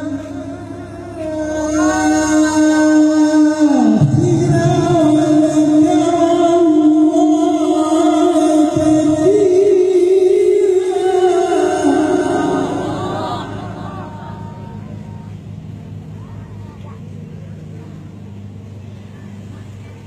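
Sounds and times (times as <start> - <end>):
man reciting in melismatic chant: 0.0 - 15.3.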